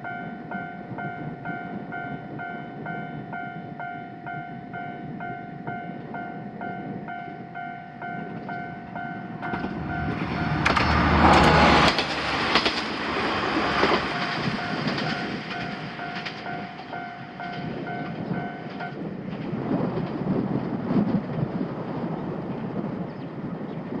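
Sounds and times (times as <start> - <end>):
level crossing warning bell: 0.0 - 10.7, 14.0 - 19.1
train wheels on rails: 4.2 - 23.0
rumbling and knocks: 9.3 - 19.0.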